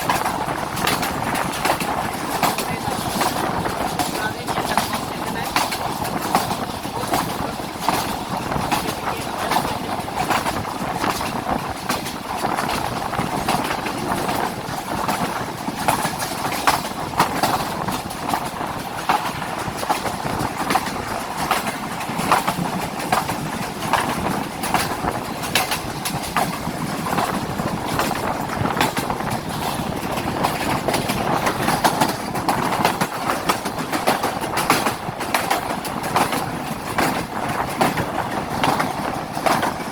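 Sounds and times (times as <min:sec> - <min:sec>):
passenger train rumbling on rails: 0:00.0 - 0:39.9
wheel and rail clicks: 0:00.0 - 0:39.9.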